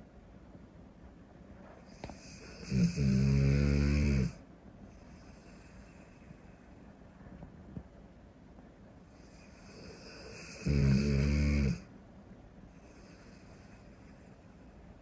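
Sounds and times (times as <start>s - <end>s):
dog snoring: 1.9s - 4.4s, 9.2s - 11.9s.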